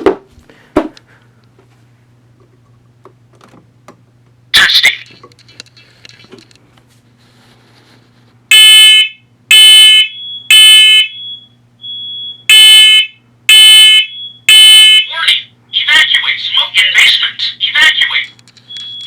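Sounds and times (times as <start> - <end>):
smoke alarm beeps: 8.5 - 15.1, 18.7 - 19.0.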